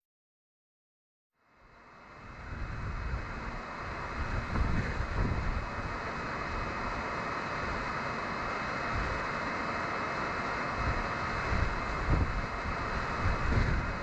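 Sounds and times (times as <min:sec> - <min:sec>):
wind buffeting microphone: 0:02.3 - 0:07.0, 0:10.7 - 0:14.0.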